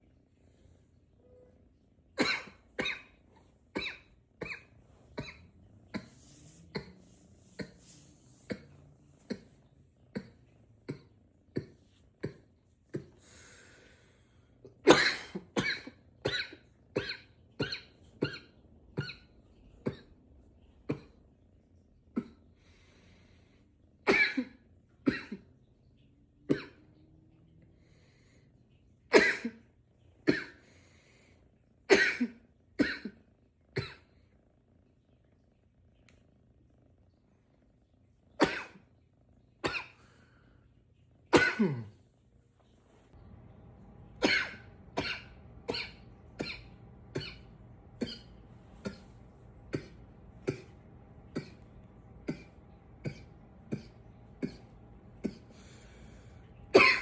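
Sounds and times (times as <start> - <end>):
man coughing: 41.4 - 41.9, 44.1 - 57.0.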